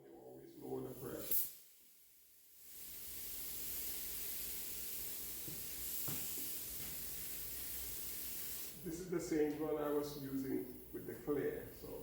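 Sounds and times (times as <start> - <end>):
paint spray gun hissing: 0.8 - 10.2.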